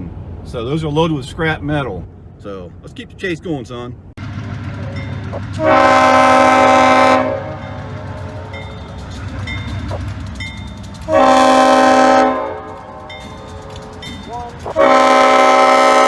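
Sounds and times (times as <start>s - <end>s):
steady low rumble: 0.0s - 16.0s
locomotive air horn blasts: 5.2s - 16.0s.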